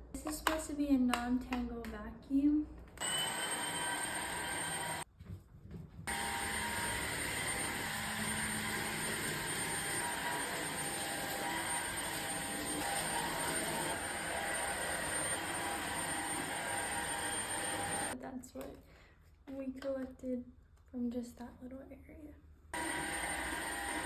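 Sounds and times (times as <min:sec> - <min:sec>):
vacuum cleaner whining: 0:03.0 - 0:05.1, 0:06.1 - 0:18.2, 0:22.8 - 0:24.0.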